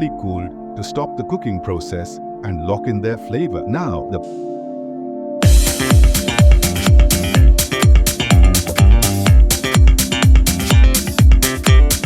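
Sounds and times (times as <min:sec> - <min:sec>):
electronic music with kick drum: 0:03.6 - 0:12.0.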